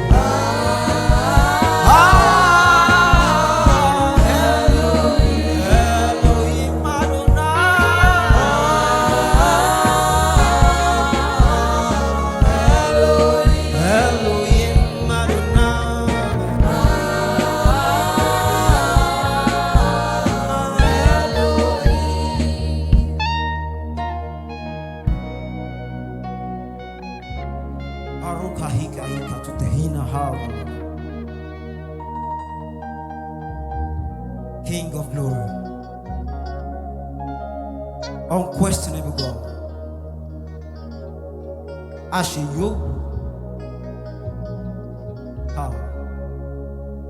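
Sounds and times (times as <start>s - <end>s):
drum hits: 0.0s - 23.2s
bass: 0.0s - 47.0s
gospel worship band music: 0.0s - 47.0s
keyboard chords: 0.0s - 47.0s.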